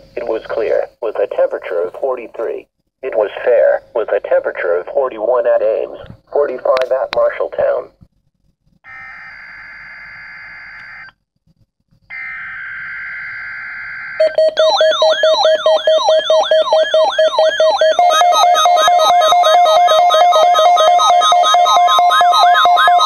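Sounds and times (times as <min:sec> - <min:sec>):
screechy digital data tones: 0:08.8 - 0:11.2, 0:12.1 - 0:23.0
synthesizer tune: 0:14.2 - 0:23.0.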